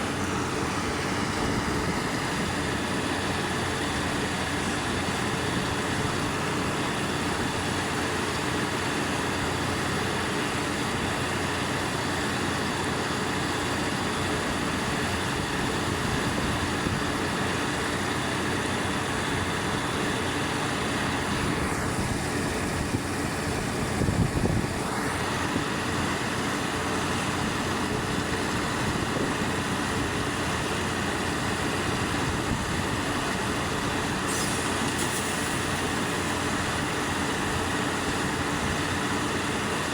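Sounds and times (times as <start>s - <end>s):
drilling rig engines: 0.0s - 39.9s
air compressor running: 14.4s - 39.9s.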